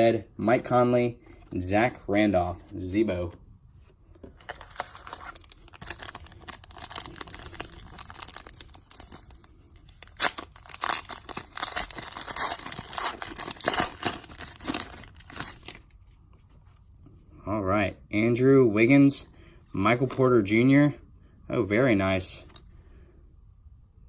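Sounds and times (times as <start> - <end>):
foil wrapper tearing and crinkling: 4.6 - 15.8.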